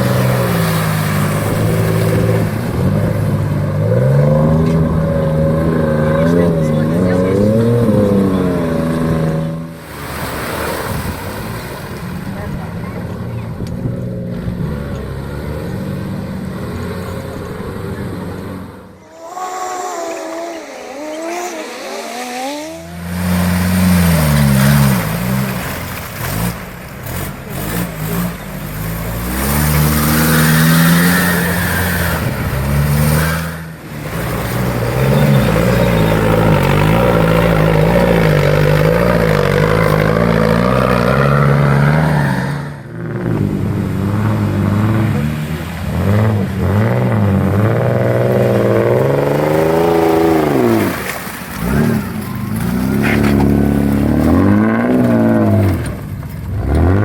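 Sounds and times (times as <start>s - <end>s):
off-road vehicle engine revving: 0.0s - 57.0s.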